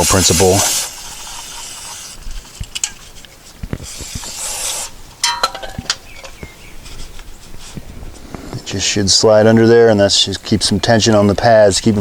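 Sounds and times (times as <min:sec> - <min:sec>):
scrubbing hiss: 0:00.0 - 0:05.2, 0:06.0 - 0:09.1.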